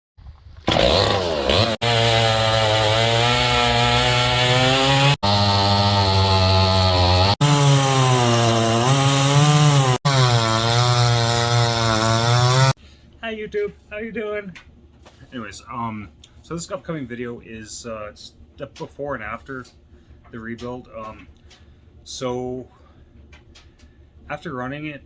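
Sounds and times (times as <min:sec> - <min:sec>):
chainsaw revving: 0:00.7 - 0:12.8.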